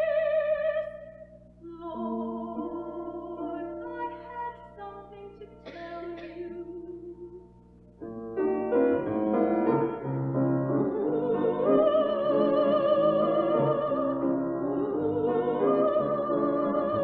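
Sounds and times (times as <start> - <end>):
woman singing operatically: 0.0 - 7.4, 10.9 - 17.0
piano chords: 1.6 - 17.0.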